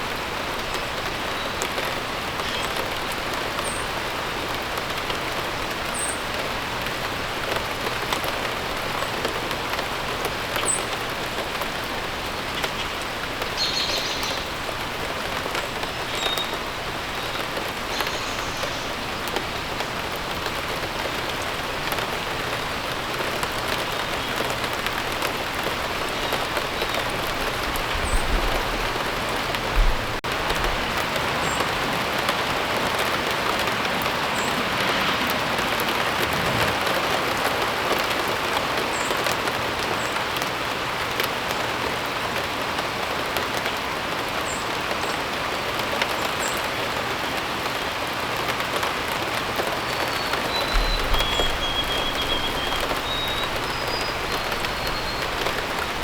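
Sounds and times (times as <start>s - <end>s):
steady rain falling: 0.0s - 56.0s
low rumble and thump: 29.6s - 30.8s, 50.7s - 56.0s.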